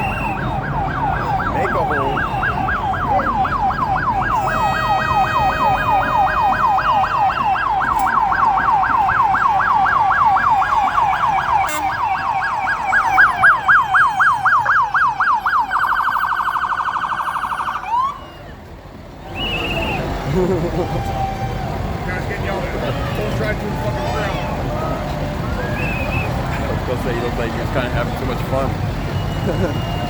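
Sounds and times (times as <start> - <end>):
steady second siren tone: 0.0 - 18.2
electronic siren yelping: 0.0 - 18.5.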